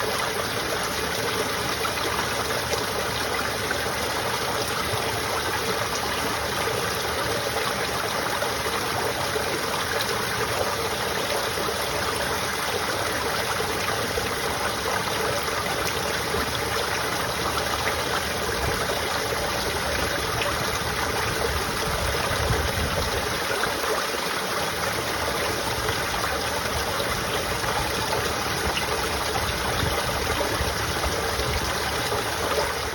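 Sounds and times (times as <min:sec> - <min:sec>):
water trickling into a drain: 0:00.0 - 0:32.9.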